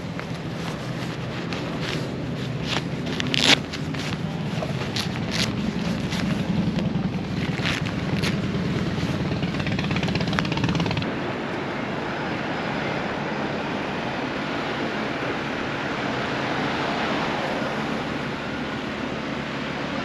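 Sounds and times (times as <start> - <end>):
motorcycle engine running: 0.0 - 11.1
wind and road noise: 0.0 - 20.0.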